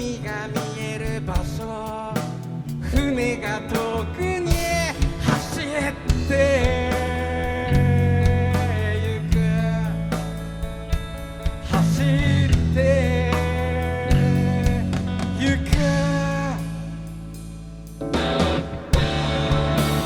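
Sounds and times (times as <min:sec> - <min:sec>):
bass notes: 0:00.0 - 0:20.0
electric guitar lead melody: 0:18.0 - 0:20.0
drum beat: 0:18.2 - 0:20.0.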